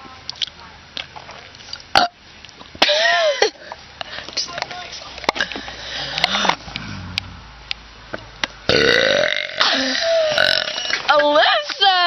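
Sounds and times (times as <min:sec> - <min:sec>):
woman burping: 0:01.9 - 0:02.2, 0:08.7 - 0:11.0.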